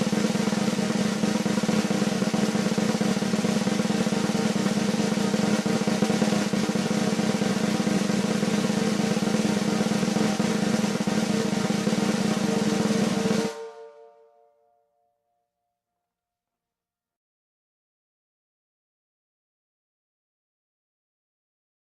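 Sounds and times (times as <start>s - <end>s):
snare drum roll: 0.0s - 14.2s.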